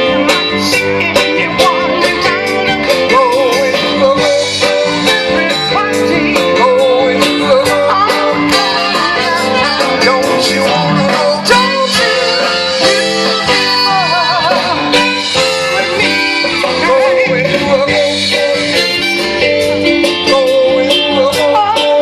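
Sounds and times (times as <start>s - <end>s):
guitar: 0.0s - 22.0s
person singing: 0.0s - 22.0s
steady drum beat: 0.0s - 22.0s.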